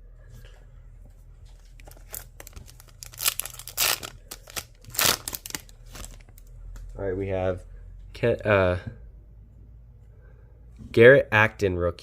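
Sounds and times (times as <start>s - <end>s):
foil wrapper tearing and crinkling: 1.8s - 6.4s.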